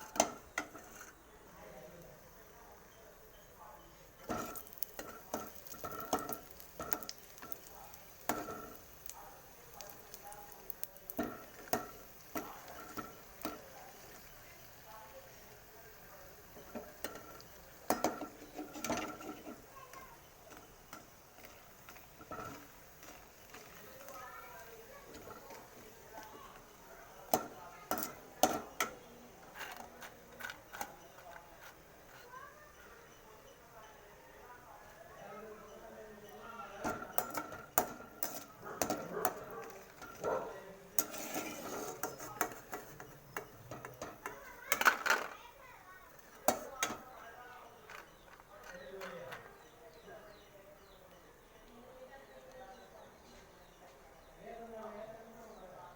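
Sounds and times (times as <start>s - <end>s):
metal utensil scraping a pan: 0.0s - 1.3s, 4.2s - 32.3s, 36.8s - 45.4s.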